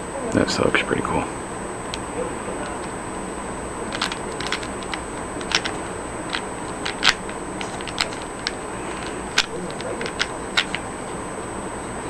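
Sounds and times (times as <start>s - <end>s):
puzzle cube layers clicking: 3.9s - 10.8s.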